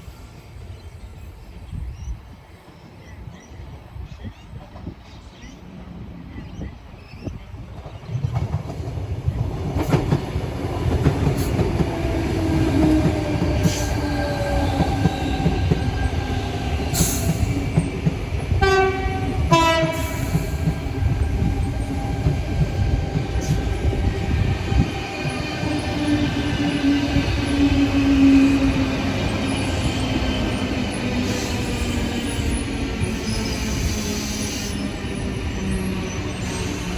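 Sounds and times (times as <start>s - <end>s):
train wheels rumbling on rail: 0.0s - 36.9s
train horn blasts: 18.6s - 20.4s.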